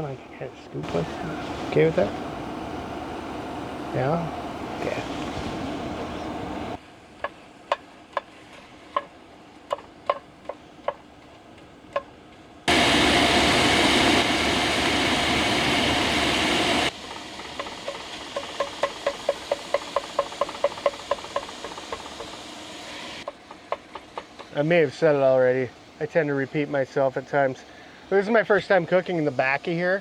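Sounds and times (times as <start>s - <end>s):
loud steady hiss: 0.0s - 30.0s
utensil tapping against a pan: 17.1s - 22.4s.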